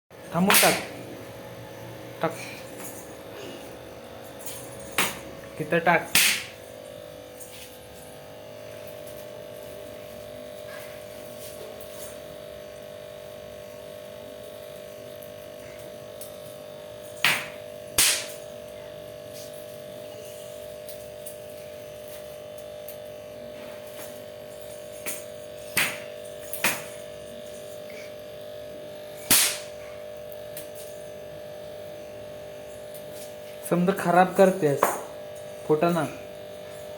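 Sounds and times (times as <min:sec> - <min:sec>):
electrical hum: 0:00.1 - 0:36.9
snap firecrackers cracking: 0:00.3 - 0:01.0, 0:06.0 - 0:06.6, 0:17.2 - 0:18.5, 0:25.0 - 0:28.0, 0:29.2 - 0:30.9.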